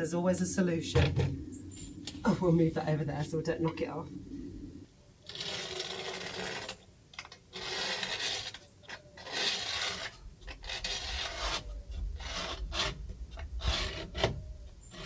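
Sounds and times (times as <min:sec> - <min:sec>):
screw scraping on plywood: 0:05.3 - 0:15.0.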